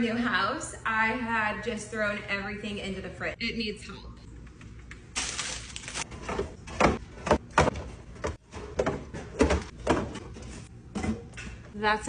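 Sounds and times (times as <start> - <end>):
containers clunking on shelves: 6.2 - 11.7.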